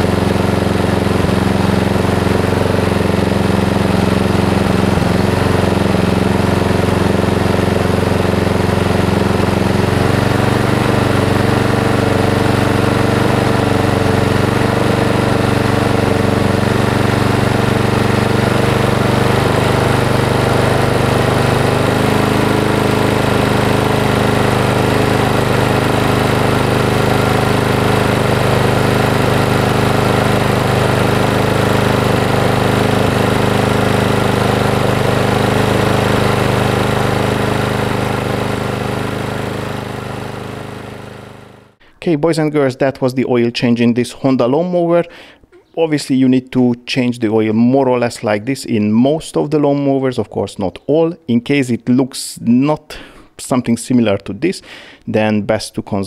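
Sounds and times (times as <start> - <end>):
lawn mower engine running: 0.0 - 42.0.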